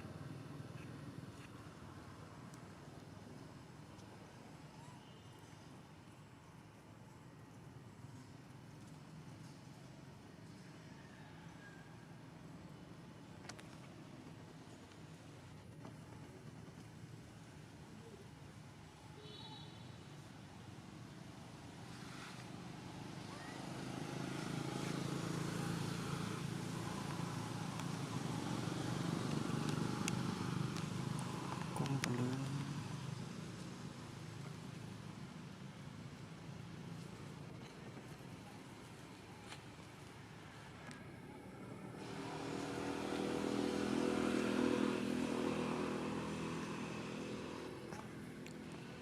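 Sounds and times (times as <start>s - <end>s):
low engine-like hum: 22.9s - 49.0s.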